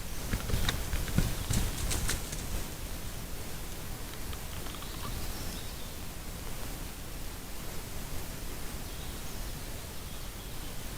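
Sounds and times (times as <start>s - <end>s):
faint rustling: 0.0s - 5.7s
outdoor background hiss: 0.0s - 10.9s.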